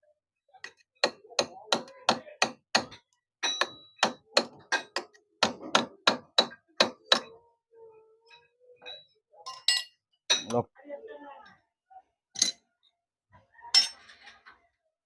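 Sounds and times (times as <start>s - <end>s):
hammer striking metal: 1.0s - 7.4s.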